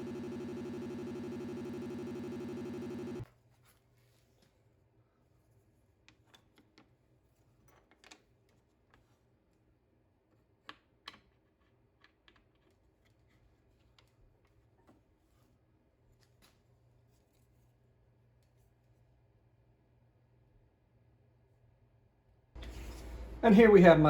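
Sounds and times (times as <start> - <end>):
low steady hum: 0.0 - 3.2, 22.6 - 24.0.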